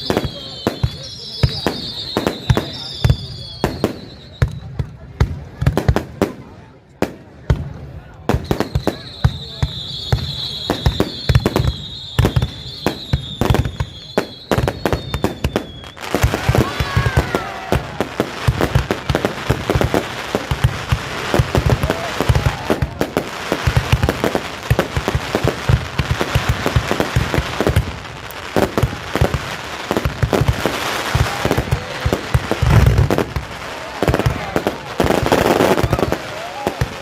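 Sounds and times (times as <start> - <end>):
deep fireworks booms: 0.0 - 37.0
fireworks bangs and crackles: 0.0 - 37.0.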